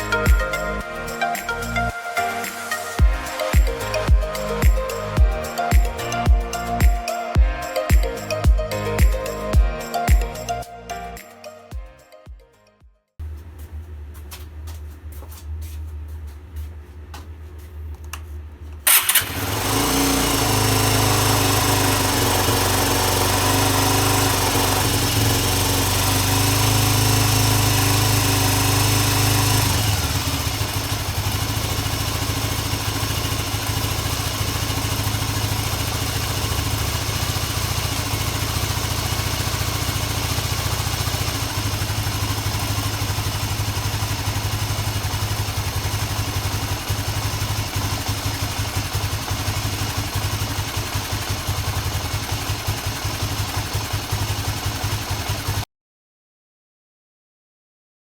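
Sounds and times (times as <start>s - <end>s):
motorcycle engine idling: 18.8s - 55.6s
motorcycle engine starting: 18.8s - 55.7s.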